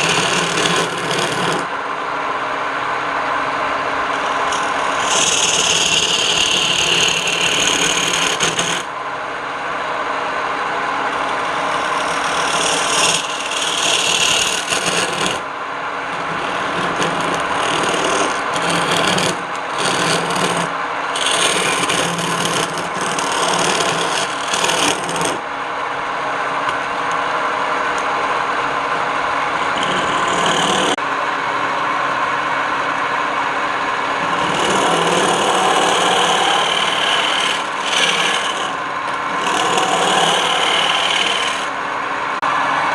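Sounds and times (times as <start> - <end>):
wood lathe motor hum: 0.0 - 1.7, 4.1 - 8.9, 10.8 - 15.5, 16.1 - 25.4, 29.4 - 31.0, 34.0 - 41.8
tool scraping spinning wood: 0.0 - 1.8, 3.8 - 8.9, 10.8 - 25.5, 28.8 - 31.0, 34.0 - 41.8.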